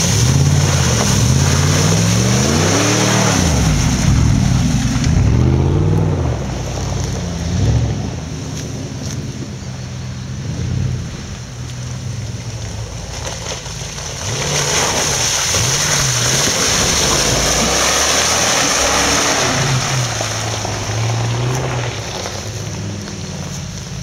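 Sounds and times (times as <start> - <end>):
engine revving under load: 0.0 - 8.6, 14.2 - 23.2.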